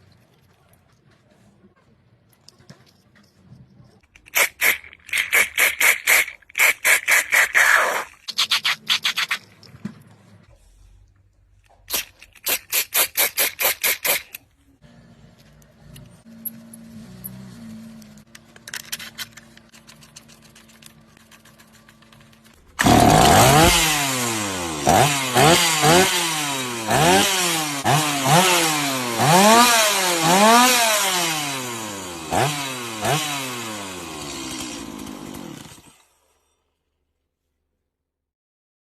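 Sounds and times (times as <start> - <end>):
chainsaw engine revving: 22.8 - 36.2.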